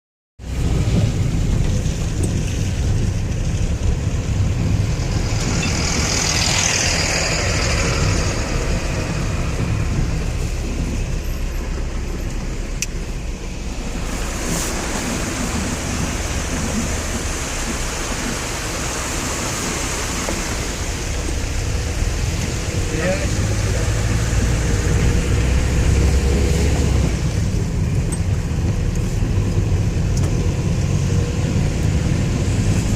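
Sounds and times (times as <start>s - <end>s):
road traffic rumble: 0.4s - 32.9s
vehicle passing: 4.2s - 11.0s, 13.4s - 27.4s.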